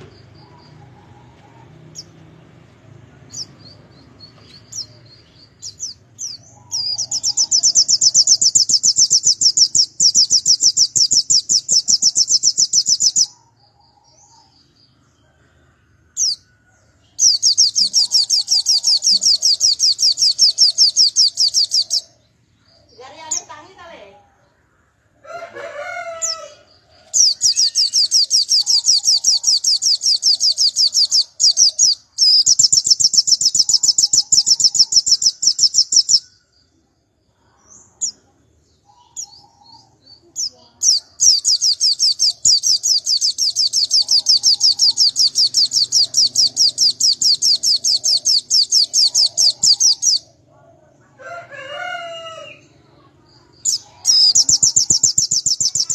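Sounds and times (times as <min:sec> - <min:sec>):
rooster crowing: 0:00.4 - 0:02.2, 0:25.2 - 0:29.6, 0:51.0 - 0:52.9
bird singing high trills: 0:03.3 - 0:15.1, 0:16.1 - 0:23.7, 0:26.1 - 0:36.6, 0:37.8 - 0:50.4, 0:53.5 - 0:55.9.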